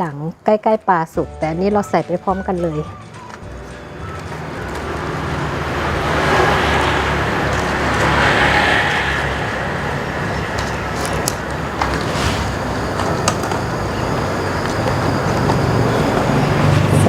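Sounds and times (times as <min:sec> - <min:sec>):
vehicle-like rumble: 0:03.5 - 0:17.0.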